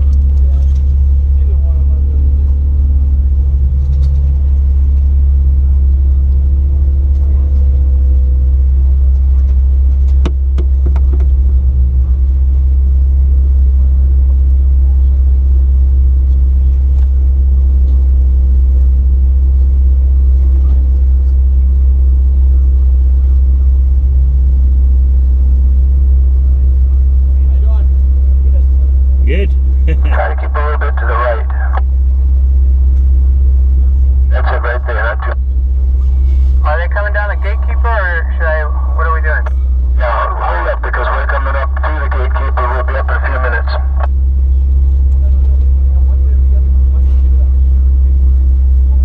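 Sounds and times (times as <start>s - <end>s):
engine low drone: 0.0s - 49.0s.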